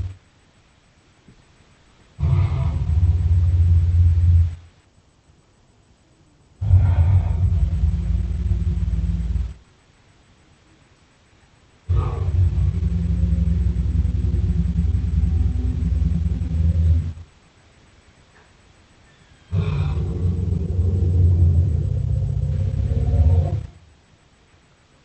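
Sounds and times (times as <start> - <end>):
deep rumbling dinosaur growls: 2.2 - 4.6, 6.6 - 9.6, 11.9 - 17.3, 19.5 - 23.9.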